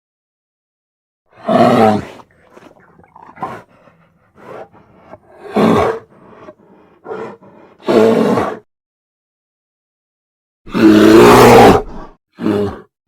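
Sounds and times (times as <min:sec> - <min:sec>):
bear growls: 0:01.3 - 0:08.6, 0:10.7 - 0:13.0
bear roars: 0:01.3 - 0:08.6, 0:10.7 - 0:12.9.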